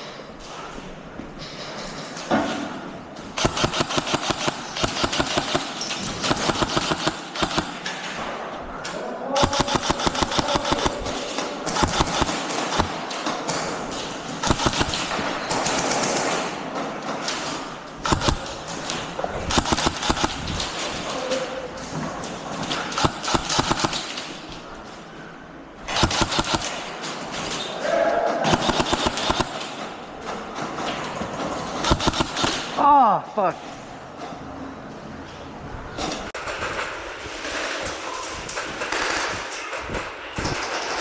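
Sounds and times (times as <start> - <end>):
airsoft guns firing bursts: 3.4 - 8.3, 9.4 - 16.6, 17.2 - 21.2, 22.7 - 24.7, 25.8 - 27.7, 28.4 - 30.0, 31.8 - 32.8.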